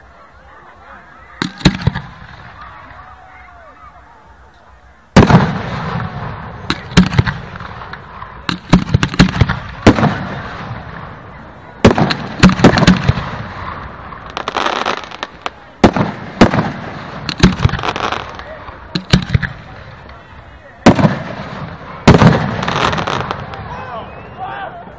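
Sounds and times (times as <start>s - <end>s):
fireworks crackling hiss: 0.0s - 24.9s
fireworks bangs: 1.3s - 3.2s, 5.1s - 24.4s.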